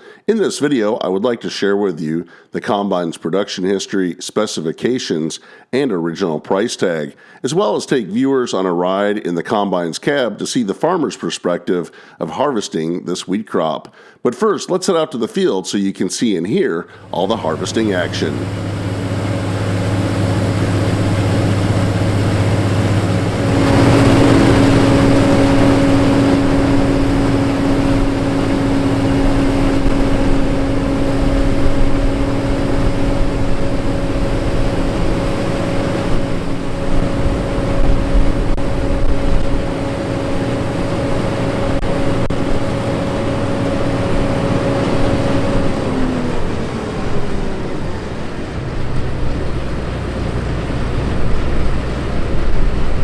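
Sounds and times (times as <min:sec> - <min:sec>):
machinery whine: 0:17.0 - 0:52.6
combine engine and threshing drone: 0:17.0 - 0:53.0.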